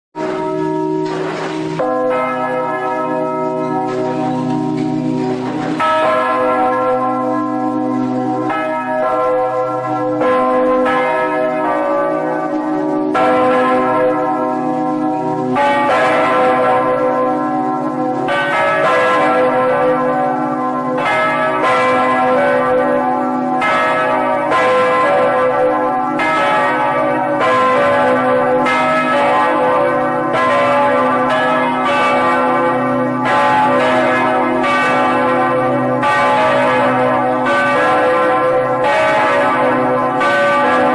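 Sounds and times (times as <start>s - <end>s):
church bells pealing: 0.2s - 40.9s.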